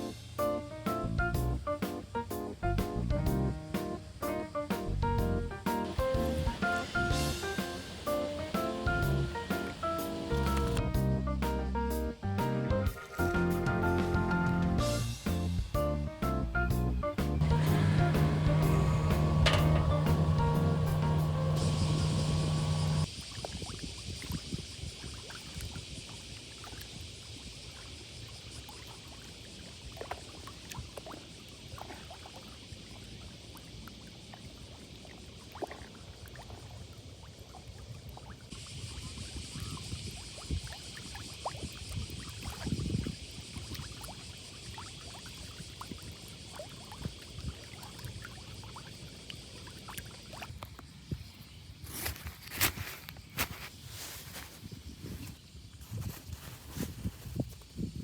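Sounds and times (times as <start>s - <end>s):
steady high hiss: 0.0s - 23.1s, 50.8s - 58.0s
small crackles and knocks: 51.8s - 57.8s.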